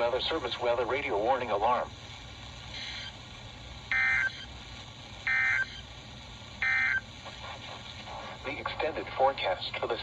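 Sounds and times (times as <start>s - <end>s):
buzzy digital tone bursts: 3.9s - 4.6s, 5.2s - 5.9s, 6.6s - 7.1s.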